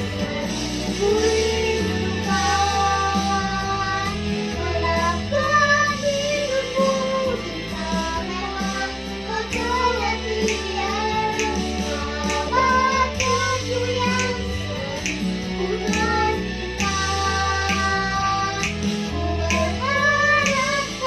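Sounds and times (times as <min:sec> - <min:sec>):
backing track with beat: 0:00.0 - 0:21.0
child singing: 0:00.0 - 0:21.0.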